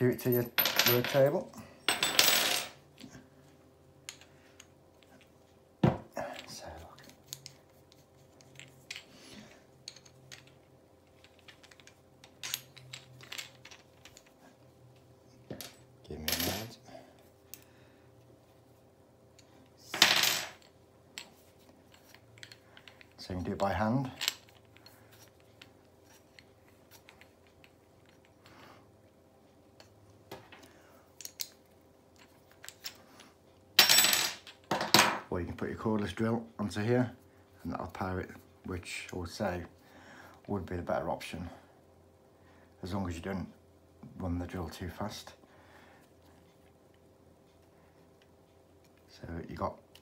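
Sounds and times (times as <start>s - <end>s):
faint steady hum: 0.0s - 50.0s
small metal parts clinking: 6.3s - 14.5s, 19.4s - 28.6s.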